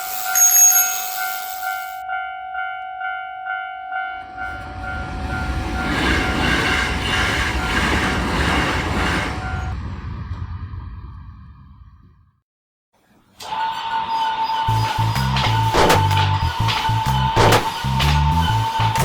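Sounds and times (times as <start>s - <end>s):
level crossing bell ringing: 0.1s - 4.2s
train rumbling past: 3.8s - 12.4s.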